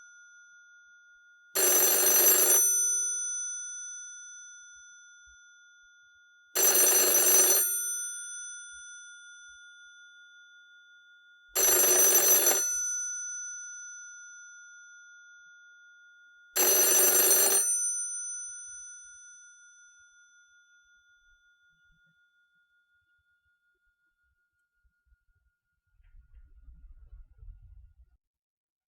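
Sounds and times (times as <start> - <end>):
telephone bell ringing: 1.5 - 3.7, 6.5 - 8.6, 11.6 - 13.8, 16.6 - 20.1.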